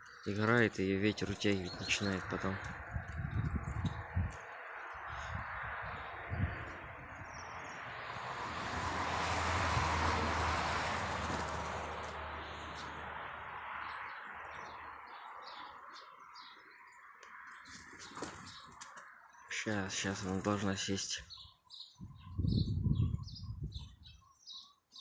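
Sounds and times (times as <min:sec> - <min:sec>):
small birds chirping: 0:00.0 - 0:08.3, 0:10.9 - 0:25.0
wind gusting over microphone: 0:01.1 - 0:13.0, 0:22.0 - 0:24.2.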